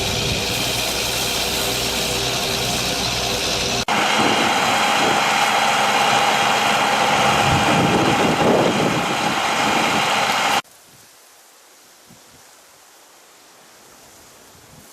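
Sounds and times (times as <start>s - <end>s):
hiss: 0.0s - 3.9s
heavy engine running: 0.0s - 10.6s.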